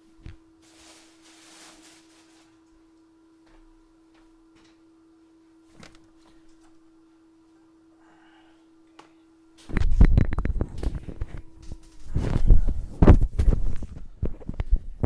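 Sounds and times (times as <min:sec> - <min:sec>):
faint steady hum: 0:00.0 - 0:15.0
handling rustle: 0:00.6 - 0:02.7, 0:10.6 - 0:14.6.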